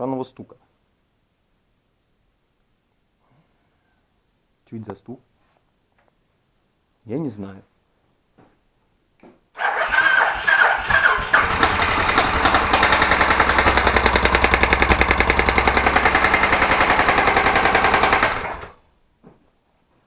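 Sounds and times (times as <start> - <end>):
motorcycle engine starting and idling: 9.6 - 18.9.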